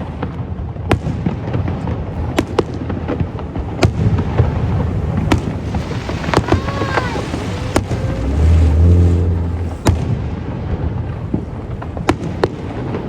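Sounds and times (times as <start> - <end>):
fireworks bangs: 0.0 - 13.0
fireworks crackle and rumble: 0.0 - 13.0
fireworks whistling: 3.1 - 13.0.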